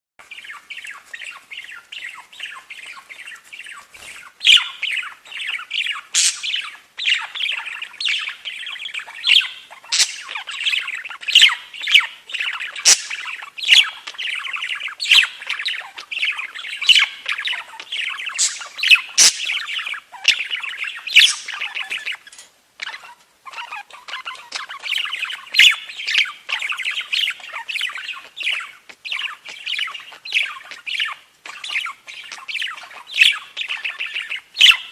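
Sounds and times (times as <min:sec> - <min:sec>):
budgies chattering and warbling: 0:00.2 - 0:34.9
sharp bird squawks and chirps: 0:03.9 - 0:22.2.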